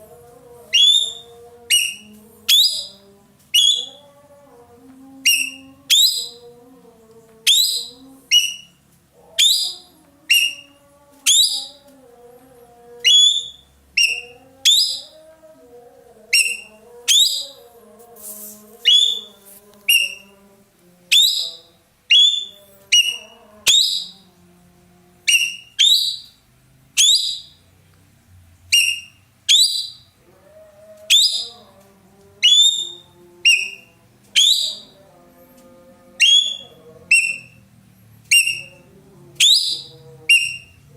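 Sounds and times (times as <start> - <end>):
bird whistled calls: 0.8 - 3.0, 3.6 - 4.0, 5.3 - 6.4, 7.5 - 8.8, 9.4 - 10.7, 11.3 - 11.8, 13.0 - 15.1, 16.4 - 17.6, 18.9 - 19.3, 19.9 - 20.2, 21.1 - 24.2, 25.3 - 26.4, 27.0 - 27.6, 28.7 - 30.1, 31.1 - 31.6, 32.4 - 34.9, 36.2 - 37.6, 38.3 - 38.8, 39.4 - 40.8.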